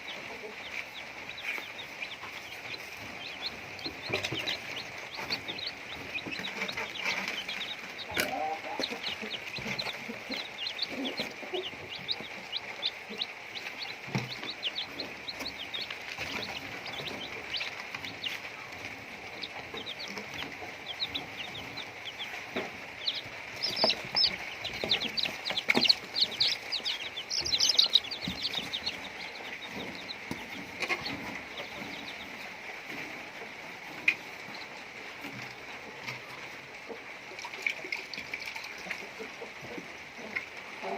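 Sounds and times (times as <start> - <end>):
chickens clucking and chirping: 0.0 - 40.9.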